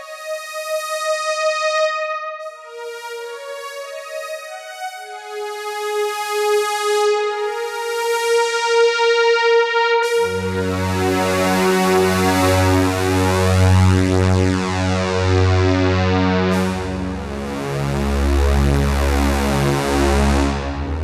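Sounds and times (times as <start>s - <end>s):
deep sustained synth chord: 9.5s - 21.0s
synthesizer held note: 16.5s - 18.8s.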